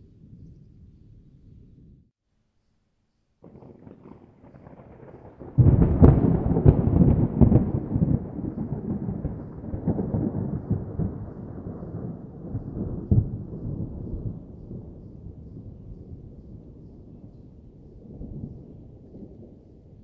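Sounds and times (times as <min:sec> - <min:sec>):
thunder cracks: 0:03.4 - 0:17.2
low thunder rumble: 0:03.4 - 0:20.0.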